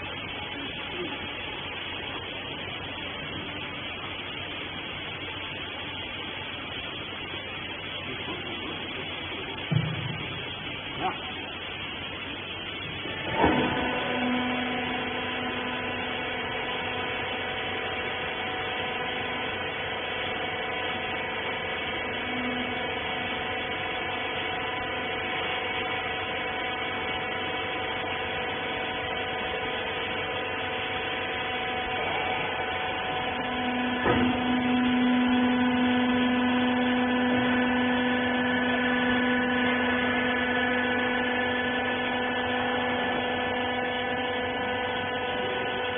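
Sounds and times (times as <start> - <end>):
hydraulic baler motor hum: 0.0 - 45.9
machine clunk: 34.0 - 34.4.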